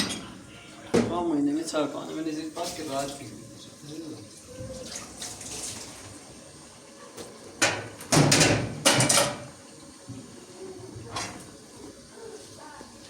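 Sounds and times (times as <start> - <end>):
loud knocks and clatter: 7.6 - 9.4.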